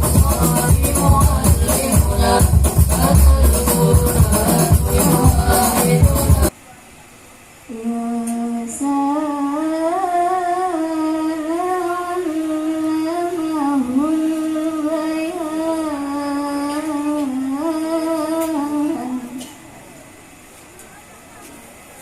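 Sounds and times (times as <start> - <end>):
tambourine-led music: 0.0 - 6.5
person singing unaccompanied: 0.0 - 6.6, 7.7 - 19.6.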